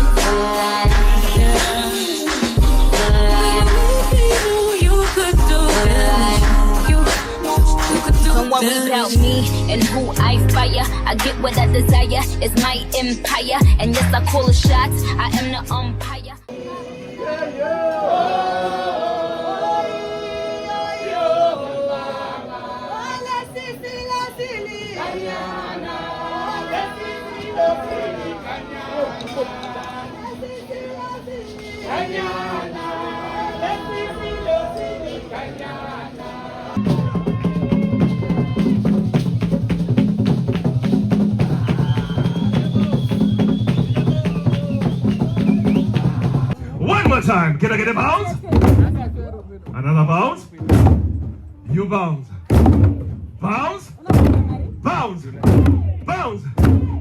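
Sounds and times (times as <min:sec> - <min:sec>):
song with drums and heavy bass: 0:00.0 - 0:08.5, 0:09.2 - 0:16.0, 0:36.8 - 0:46.6
song with sustained sung vocals: 0:00.0 - 0:11.8, 0:16.5 - 0:39.0.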